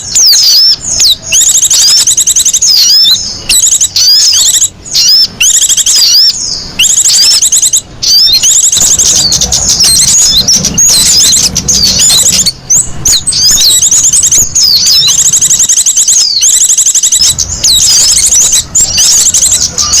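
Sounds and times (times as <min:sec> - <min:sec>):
songbird trills and chirps: 0:00.0 - 0:20.0.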